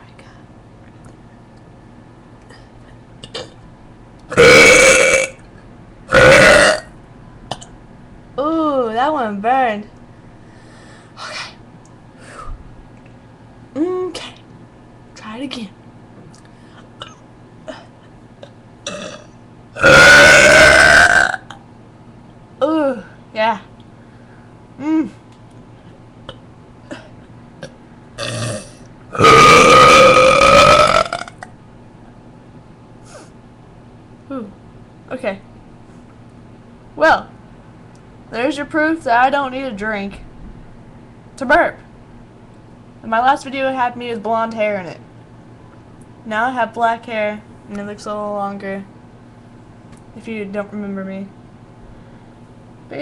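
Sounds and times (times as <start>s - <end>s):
person burping: 4.3s - 5.4s, 6.1s - 6.9s, 18.8s - 21.6s, 26.3s - 31.5s.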